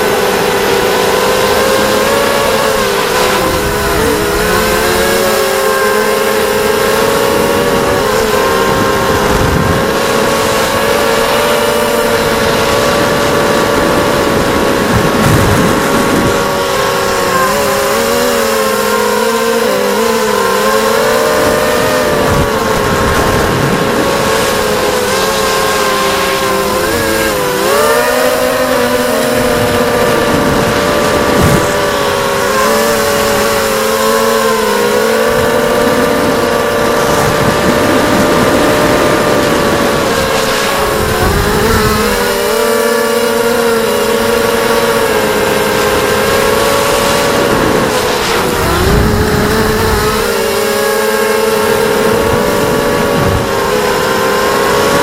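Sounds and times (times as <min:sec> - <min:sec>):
drone motors whining: 0:00.0 - 0:55.0.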